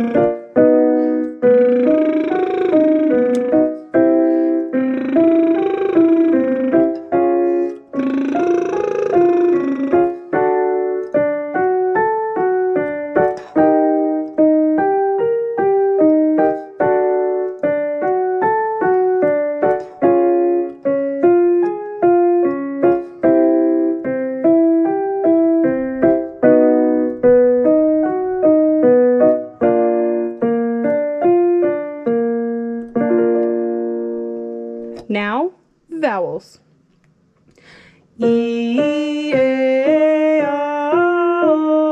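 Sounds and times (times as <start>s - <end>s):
lip trill buzzing: 0.0s - 0.6s, 1.4s - 3.8s, 4.7s - 7.2s, 7.9s - 10.4s
piano playing scale patterns: 0.0s - 41.9s.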